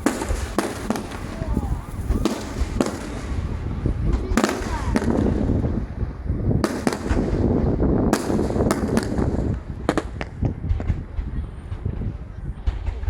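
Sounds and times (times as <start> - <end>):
fireworks bangs: 0.0 - 13.0
low rumble: 0.0 - 13.0.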